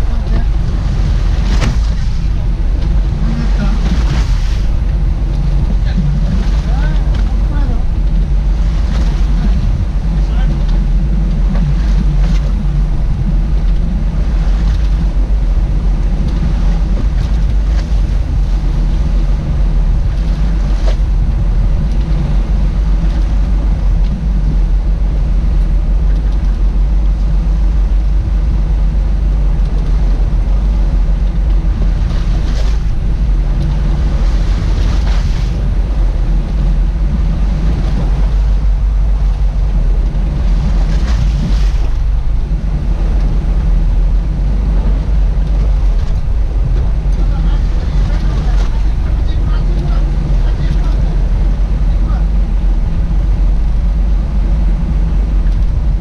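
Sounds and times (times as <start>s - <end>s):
boat engine running: 0.0s - 56.0s
sea wash: 0.0s - 56.0s
wind on microphone: 0.0s - 56.0s.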